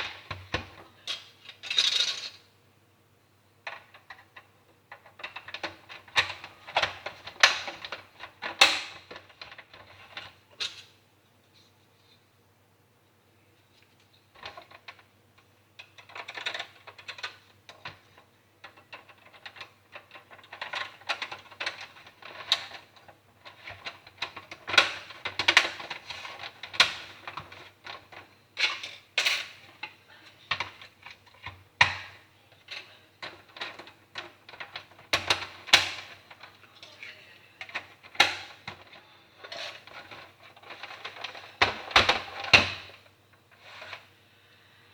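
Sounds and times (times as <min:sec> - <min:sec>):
small hard parts clattering: 0:00.0 - 0:02.5, 0:14.3 - 0:37.0, 0:37.6 - 0:44.0.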